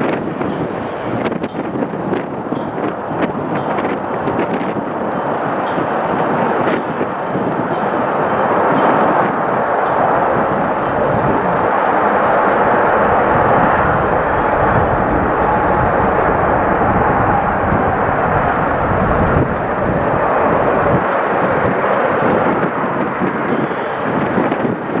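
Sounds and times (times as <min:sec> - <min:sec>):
airliner landing rushing rumble: 0:00.0 - 0:25.0.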